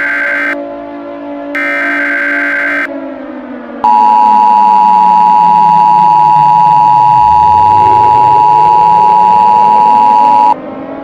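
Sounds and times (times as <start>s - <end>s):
low sound changing pitch: 0.0s - 10.6s
steady two-tone beep: 1.6s - 2.9s, 3.9s - 10.6s.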